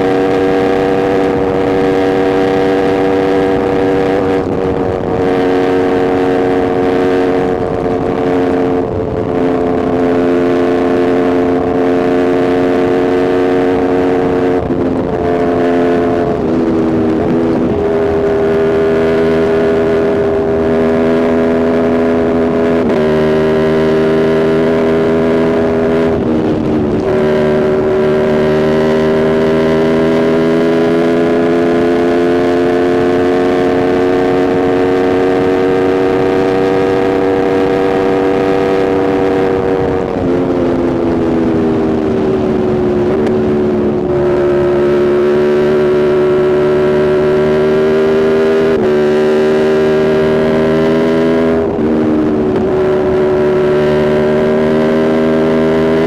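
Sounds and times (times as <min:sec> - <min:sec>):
motorcycle engine cruising: 0:00.0 - 0:56.0.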